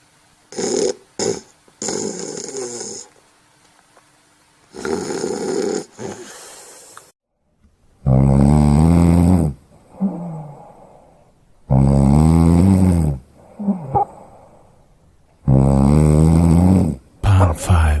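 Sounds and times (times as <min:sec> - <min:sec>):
loud snoring: 0:00.5 - 0:03.1, 0:04.7 - 0:06.9, 0:08.0 - 0:10.6, 0:11.7 - 0:14.1, 0:15.4 - 0:17.0
quiet breathing: 0:05.8 - 0:07.2, 0:09.7 - 0:11.4, 0:13.3 - 0:15.0.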